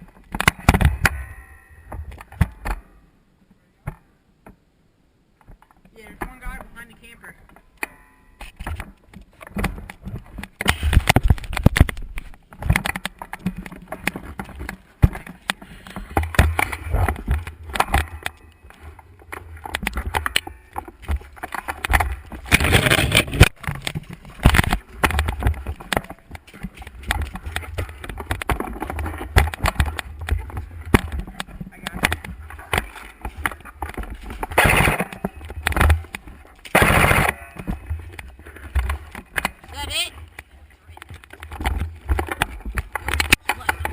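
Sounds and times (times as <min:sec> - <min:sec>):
gun handling knocks and rustling: 0:08.4 - 0:39.7, 0:40.3 - 0:43.9
airsoft rifle firing bursts: 0:36.8 - 0:37.4.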